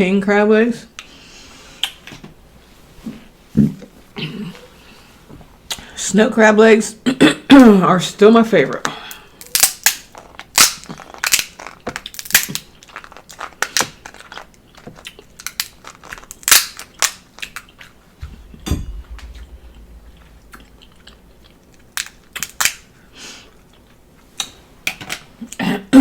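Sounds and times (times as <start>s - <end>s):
dull low thump: 18.2s - 21.5s.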